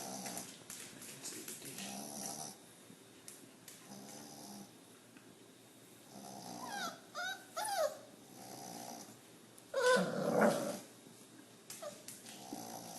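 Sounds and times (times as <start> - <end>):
dog snoring softly: 1.8 - 2.6, 3.8 - 4.8, 6.0 - 6.9, 8.2 - 9.2, 12.3 - 12.9
dog groaning: 6.1 - 10.9
dog whimpering: 6.6 - 8.1, 9.7 - 10.8.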